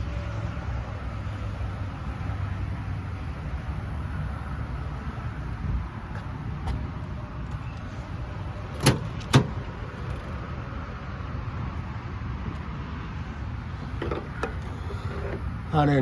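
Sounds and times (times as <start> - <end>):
steady low rumble: 0.0 - 14.7
sharp clunks: 8.8 - 10.3.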